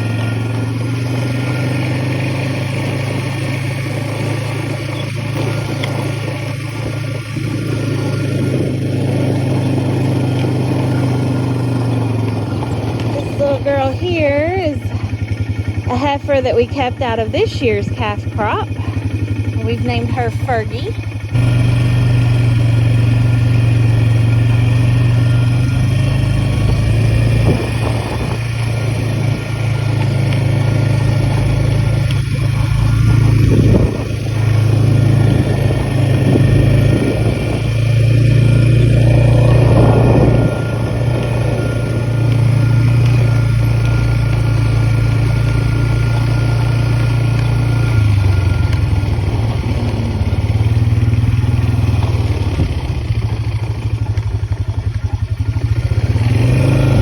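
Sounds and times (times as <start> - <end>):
all-terrain vehicle engine running: 0.0 - 57.0.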